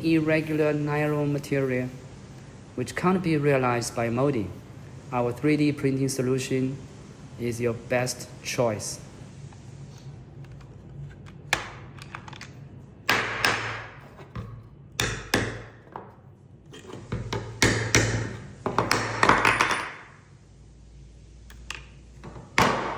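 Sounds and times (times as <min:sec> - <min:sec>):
plastic parts knocking and clacking: 0:10.5 - 0:16.2.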